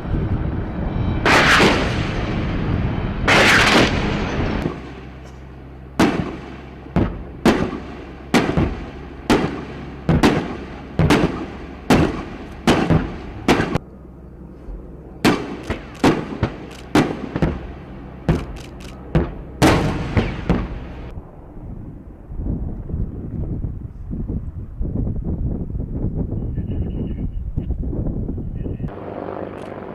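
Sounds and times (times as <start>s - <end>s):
low engine hum: 0.0s - 29.9s
gunshots: 1.3s - 2.3s, 3.3s - 5.1s, 6.0s - 13.8s, 15.2s - 21.1s.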